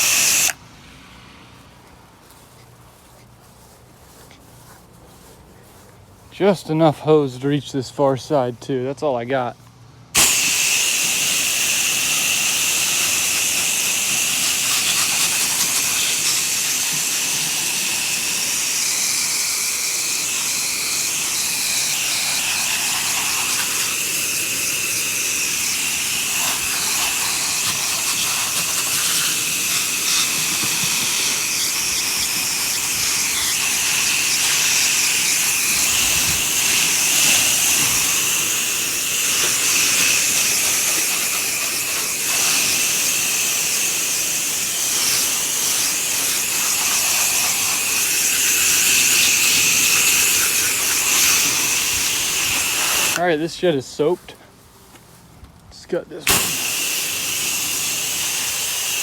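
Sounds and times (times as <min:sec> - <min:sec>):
spray nozzle hissing: 0:00.0 - 0:00.6, 0:10.2 - 0:53.3, 0:56.2 - 0:59.0.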